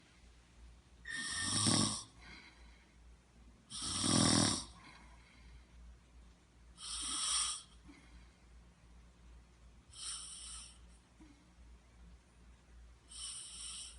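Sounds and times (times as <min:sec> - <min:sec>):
person snoring: 0:01.1 - 0:02.2, 0:03.7 - 0:04.8, 0:06.8 - 0:07.7, 0:13.1 - 0:13.9
soft breath: 0:02.0 - 0:03.2, 0:04.7 - 0:06.0, 0:06.7 - 0:08.8, 0:13.0 - 0:13.9.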